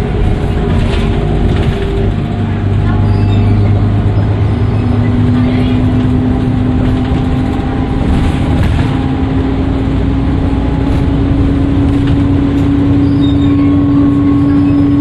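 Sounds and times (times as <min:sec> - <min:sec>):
bus engine running: 0:00.0 - 0:15.0.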